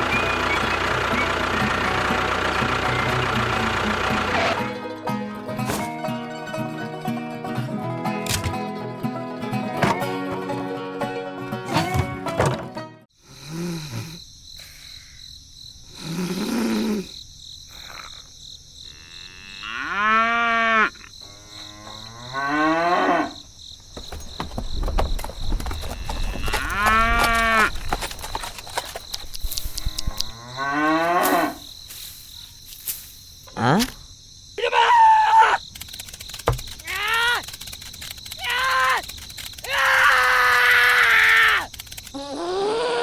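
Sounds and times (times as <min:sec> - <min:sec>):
long animal calls: 0:38.3 - 0:43.0.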